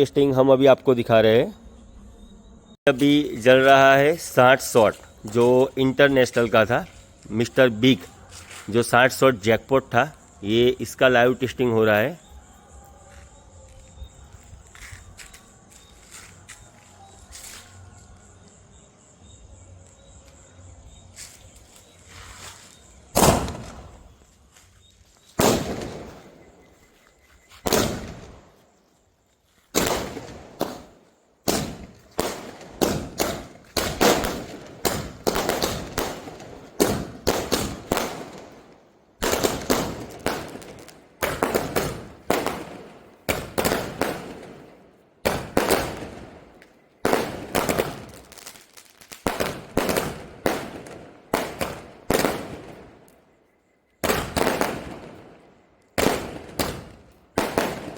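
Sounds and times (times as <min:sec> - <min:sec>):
firework bangs: 0:23.1 - 0:24.1, 0:25.4 - 0:26.6, 0:27.6 - 0:28.6, 0:29.7 - 0:53.1, 0:54.0 - 0:55.4, 0:56.0 - 0:57.9.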